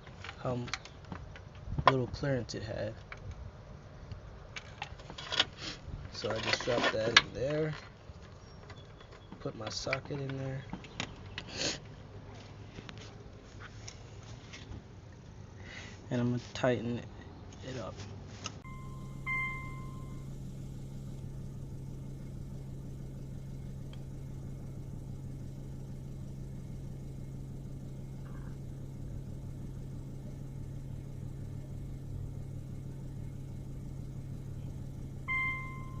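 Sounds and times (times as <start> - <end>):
car engine idling: 18.6 - 36.0
two-tone beep: 18.7 - 20.2, 35.3 - 36.0.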